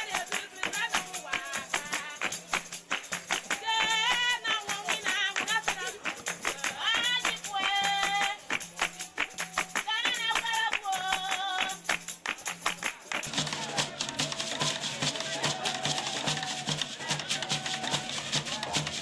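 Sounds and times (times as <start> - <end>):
hand percussion and rattles: 0.0 - 19.0
high voices singing: 12.9 - 19.0.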